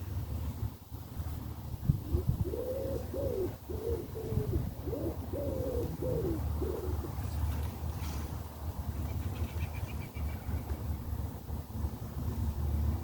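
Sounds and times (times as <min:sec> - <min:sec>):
bird cooing: 0:02.0 - 0:07.5.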